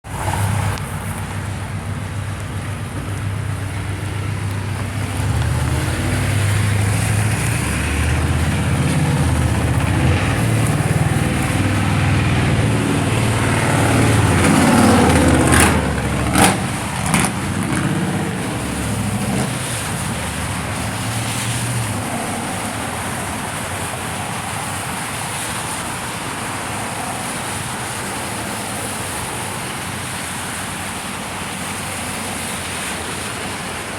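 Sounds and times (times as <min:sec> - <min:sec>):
rain hiss: 0:00.1 - 0:33.9
vehicle passing on wet road: 0:00.1 - 0:33.9.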